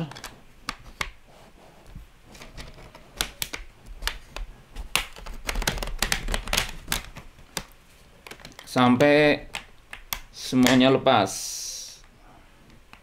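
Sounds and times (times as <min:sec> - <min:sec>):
plastic clips snapping loose: 0:02.4 - 0:10.8.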